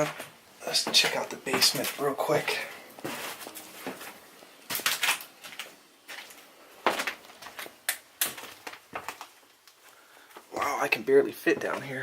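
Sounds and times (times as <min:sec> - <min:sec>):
footsteps: 0:00.0 - 0:12.0.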